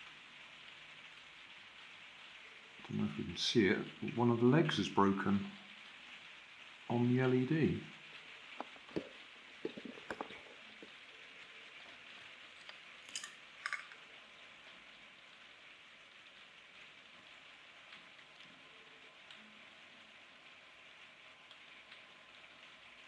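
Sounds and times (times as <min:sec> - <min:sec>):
steady hiss: 0:00.0 - 0:23.0
small parts clicking: 0:12.6 - 0:14.1.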